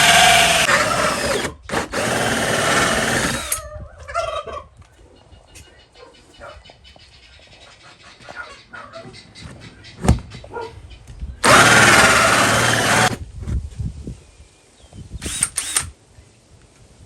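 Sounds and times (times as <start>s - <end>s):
power drill boring through wall: 0.0s - 3.6s, 11.4s - 13.2s, 15.2s - 15.9s.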